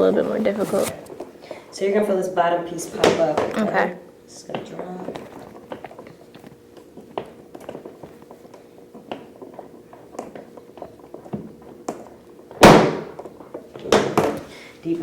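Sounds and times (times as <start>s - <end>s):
table section dropping with thud: 12.6s - 13.2s.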